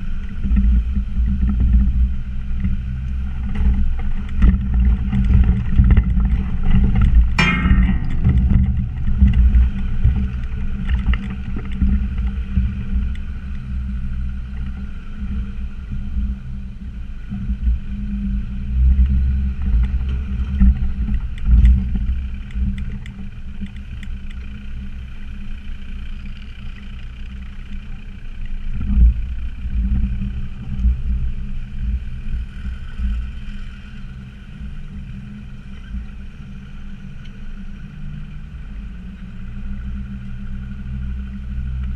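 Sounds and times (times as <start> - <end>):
diesel engine at low revs: 0.0 - 41.9.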